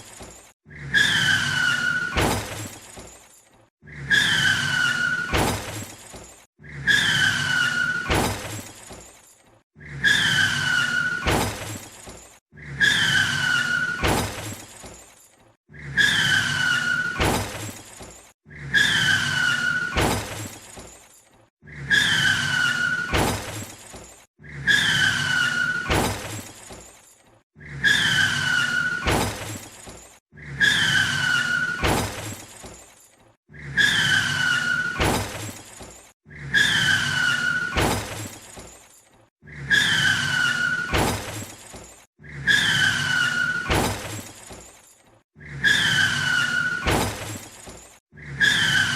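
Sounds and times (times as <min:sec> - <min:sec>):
tyre squeal: 0:00.0 - 0:44.8, 0:45.4 - 0:48.9
glass shattering: 0:01.3 - 0:03.6, 0:04.5 - 0:06.5, 0:07.3 - 0:09.5, 0:10.3 - 0:12.4, 0:13.1 - 0:15.5, 0:16.4 - 0:18.3, 0:19.1 - 0:21.4, 0:22.4 - 0:24.3, 0:25.2 - 0:27.2, 0:28.2 - 0:30.2, 0:30.8 - 0:33.2, 0:34.2 - 0:36.1, 0:37.0 - 0:39.2, 0:40.0 - 0:42.1, 0:42.8 - 0:45.1, 0:45.9 - 0:48.0
car crash impact: 0:01.8 - 0:03.2, 0:04.9 - 0:06.2, 0:07.8 - 0:09.1, 0:10.9 - 0:12.3, 0:13.4 - 0:15.1, 0:16.9 - 0:18.2, 0:19.4 - 0:21.0, 0:22.6 - 0:24.1, 0:25.7 - 0:26.9, 0:28.7 - 0:30.1, 0:31.4 - 0:32.9, 0:34.7 - 0:36.0, 0:37.5 - 0:38.8, 0:40.4 - 0:42.0, 0:43.5 - 0:44.8, 0:46.4 - 0:48.0.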